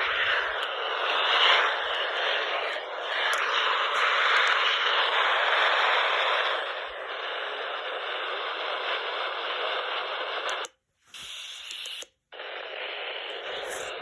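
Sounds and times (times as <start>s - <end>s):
radio static hiss: 0.0s - 14.0s.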